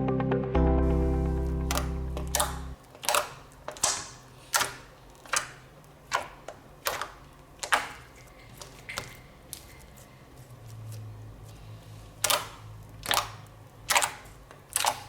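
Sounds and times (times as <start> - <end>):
slime popping clicks: 1.7 - 8.0.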